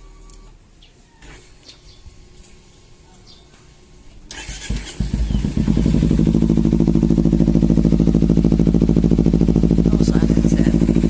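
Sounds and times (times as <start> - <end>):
motorcycle engine idling: 4.3 - 11.0.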